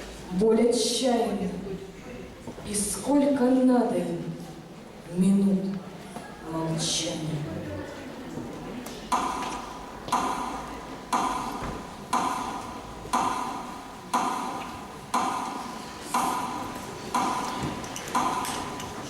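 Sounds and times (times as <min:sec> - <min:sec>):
metronome ticking: 0:09.1 - 0:18.9.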